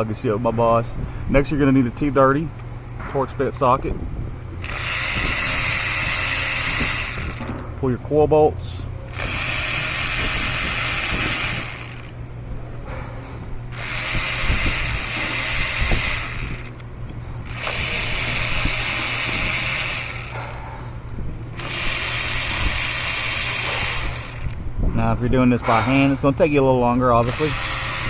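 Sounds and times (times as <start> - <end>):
electric ratchet spinning bolts: 4.6 - 7.8, 9.0 - 12.3, 13.7 - 20.7, 21.6 - 24.6, 27.2 - 28.0.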